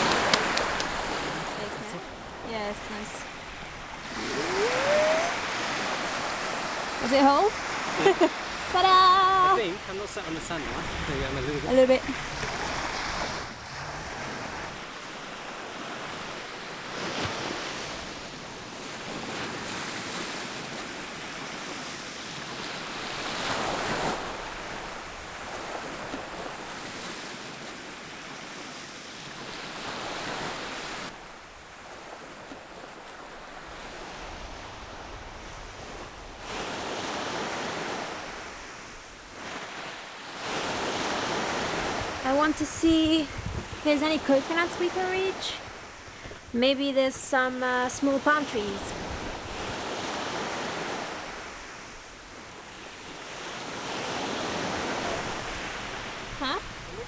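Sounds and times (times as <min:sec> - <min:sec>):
wind on microphone: 0:00.0 - 0:14.8, 0:41.6 - 0:44.8
surf breaking on beach: 0:00.0 - 0:27.8, 0:32.9 - 0:57.0.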